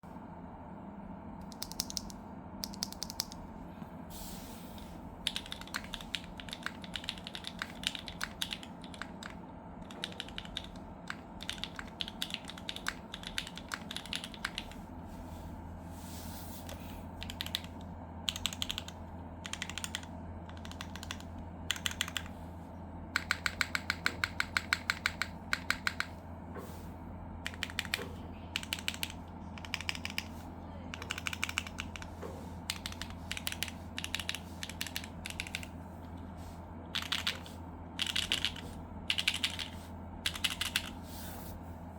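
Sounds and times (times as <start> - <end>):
typing on mechanical keyboard: 1.4 - 3.4, 5.2 - 14.8, 17.2 - 22.3, 23.2 - 26.2, 27.4 - 30.3, 30.9 - 35.7, 36.9 - 41.0.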